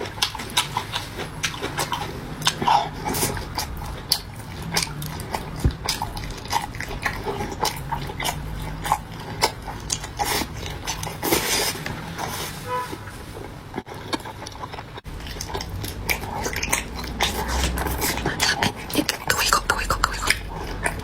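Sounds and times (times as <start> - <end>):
chewing and mouth smacks: 0.0 - 12.6, 13.4 - 21.0
loud slurp: 15.1 - 21.0
mouth clicks: 15.1 - 21.0.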